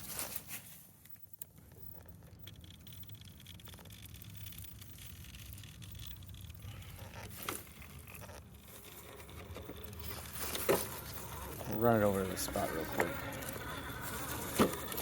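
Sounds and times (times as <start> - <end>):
high electric motor whine: 6.7 - 15.0.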